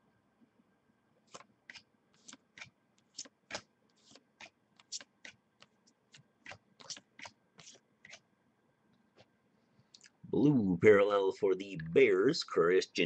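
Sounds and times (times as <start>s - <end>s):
trading cards flicking: 1.3s - 8.2s.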